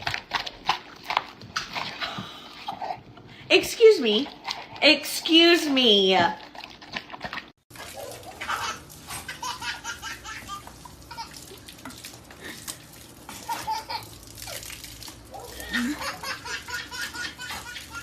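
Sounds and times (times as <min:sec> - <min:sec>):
faint water sounds: 0:01.6 - 0:18.0
people laughing: 0:15.7 - 0:18.0.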